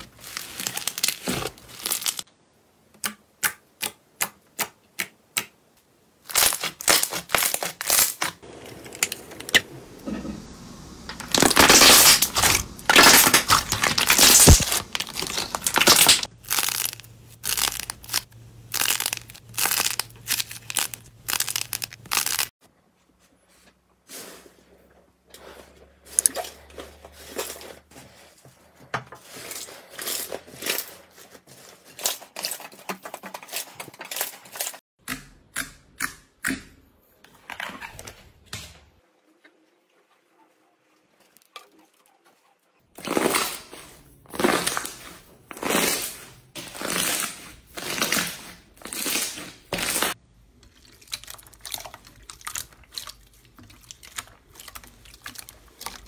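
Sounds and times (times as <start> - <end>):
slime crackling and popping: 11.2 - 22.5.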